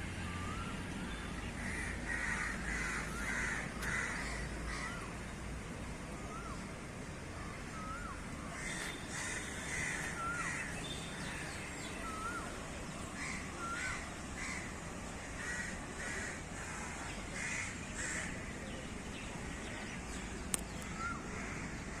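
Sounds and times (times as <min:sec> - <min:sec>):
crows cawing: 0:01.6 - 0:05.1, 0:08.6 - 0:10.7, 0:15.4 - 0:18.3, 0:21.3 - 0:21.8.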